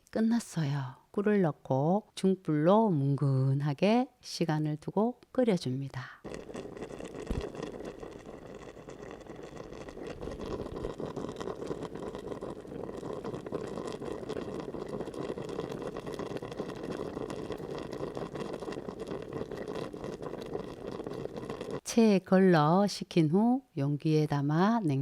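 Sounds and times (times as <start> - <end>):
pot bubbling with small pops: 5.8 - 22.0.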